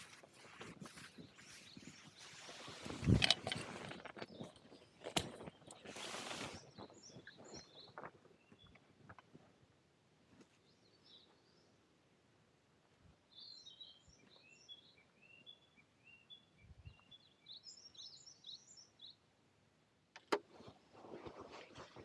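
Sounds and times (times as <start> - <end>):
small bird chirping: 3.8 - 8.8, 13.3 - 19.2.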